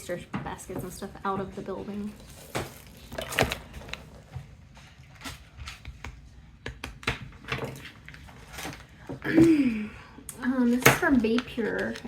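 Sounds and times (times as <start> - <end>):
packaging being handled: 10.7 - 12.0.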